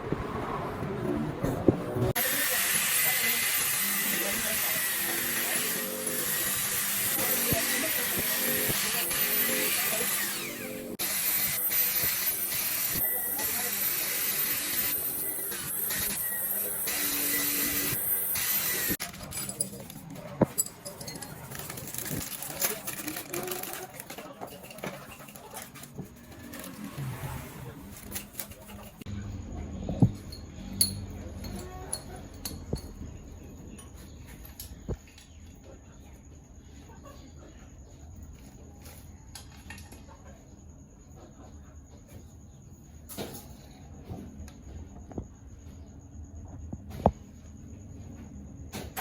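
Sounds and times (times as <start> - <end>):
hand tools clinking on metal: 11.6 - 26.0.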